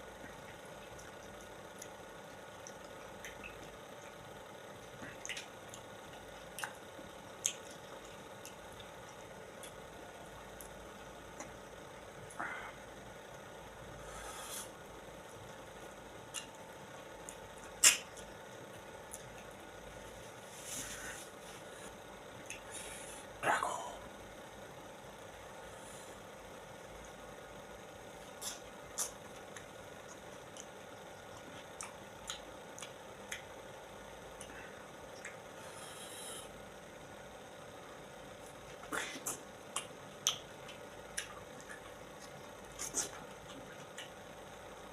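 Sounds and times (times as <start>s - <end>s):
person eating fruit: 0.2s - 12.8s, 28.2s - 33.6s, 38.4s - 44.9s
small mouth clicks: 4.9s - 9.8s, 16.3s - 16.6s, 17.2s - 18.4s, 22.4s - 22.8s, 28.4s - 30.8s, 31.4s - 33.6s, 34.4s - 35.5s, 38.7s - 44.2s.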